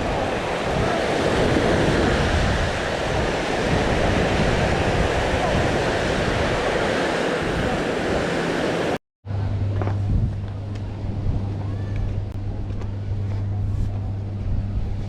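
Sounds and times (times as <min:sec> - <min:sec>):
sea surf: 0:00.0 - 0:09.0
wind buffeting microphone: 0:00.0 - 0:09.0.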